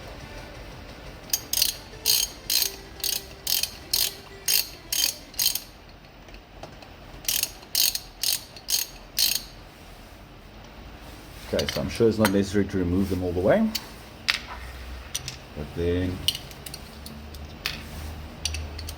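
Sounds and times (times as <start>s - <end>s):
hand ratchet clicking: 1.3s - 6.0s, 7.2s - 9.5s, 16.2s - 17.5s, 18.4s - 18.9s.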